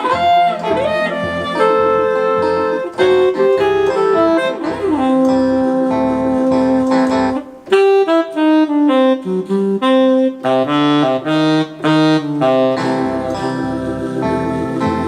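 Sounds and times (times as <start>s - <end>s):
bass line: 0.0s - 7.4s, 10.6s - 15.0s
keyboard saxophone melody: 0.0s - 15.0s
organ backing: 0.0s - 15.0s.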